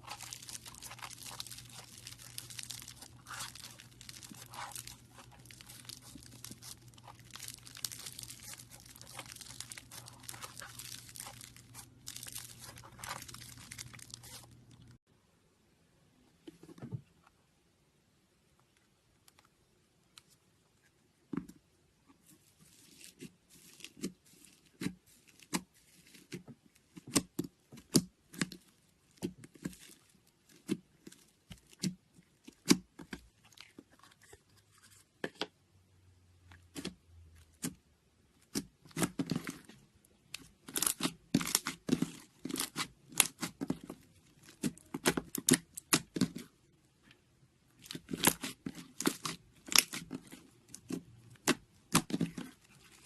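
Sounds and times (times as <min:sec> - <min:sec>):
slime squishing wet crackles: 0:00.0 - 0:15.0, 0:36.7 - 0:46.7, 0:47.7 - 0:53.0.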